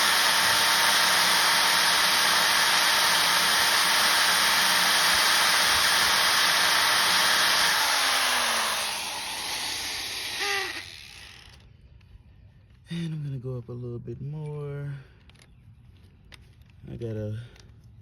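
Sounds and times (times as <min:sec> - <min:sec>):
drill motor winding down whine: 0:00.0 - 0:11.6
electric drill running under load: 0:00.0 - 0:11.7.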